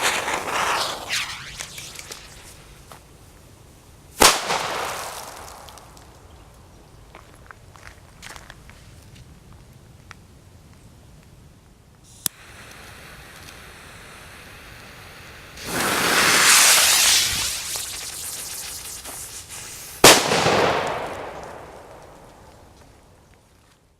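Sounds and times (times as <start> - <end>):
firecracker bang: 0.0 - 2.5, 4.2 - 6.1, 15.6 - 22.7
firecracker fuse hissing: 0.0 - 3.1, 4.2 - 6.4, 12.0 - 22.8.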